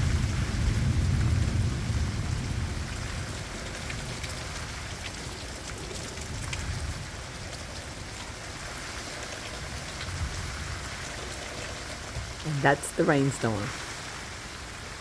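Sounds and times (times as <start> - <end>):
thunder rumble: 0.0 - 4.7
heavy rain: 0.0 - 15.0.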